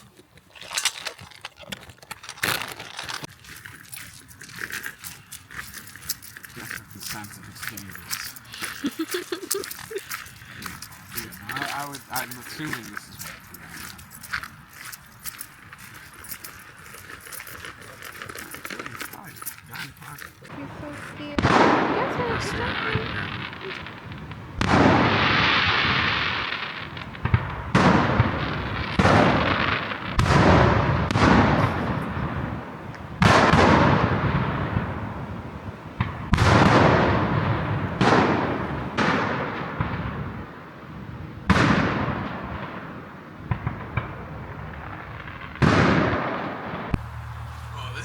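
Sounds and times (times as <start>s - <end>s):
fireworks bangs: 6.5s - 14.2s, 17.8s - 48.0s.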